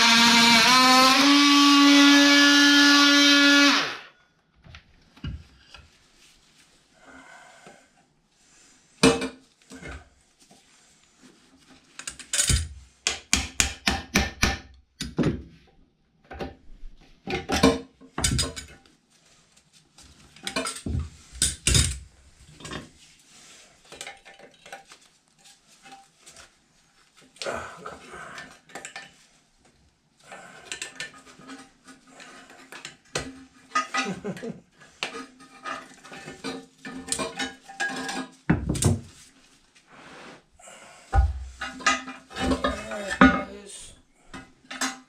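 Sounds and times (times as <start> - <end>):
power tool whining: 0.0 - 4.1.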